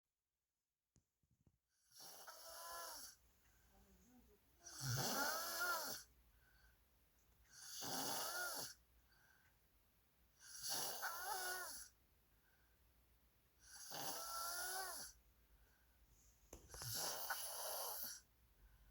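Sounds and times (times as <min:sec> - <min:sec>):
person snoring: 0:01.9 - 0:03.2, 0:04.6 - 0:06.1, 0:07.6 - 0:08.8, 0:10.4 - 0:11.9, 0:13.6 - 0:15.2, 0:16.7 - 0:18.2.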